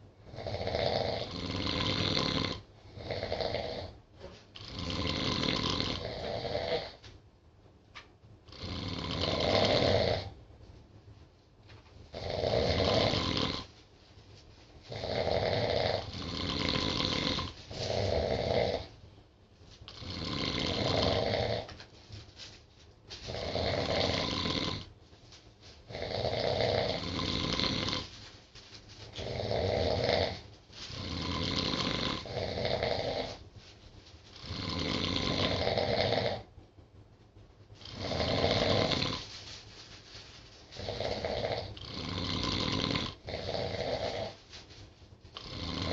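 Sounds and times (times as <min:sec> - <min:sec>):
people snoring: 0:00.3 - 0:04.0, 0:04.6 - 0:07.0, 0:08.5 - 0:10.3, 0:12.2 - 0:13.7, 0:14.9 - 0:18.9, 0:19.9 - 0:21.7, 0:23.3 - 0:24.9, 0:25.9 - 0:28.1, 0:29.2 - 0:33.4, 0:34.4 - 0:36.5, 0:37.8 - 0:39.3, 0:40.8 - 0:44.4, 0:45.4 - 0:45.9
quiet breathing: 0:37.7 - 0:45.9.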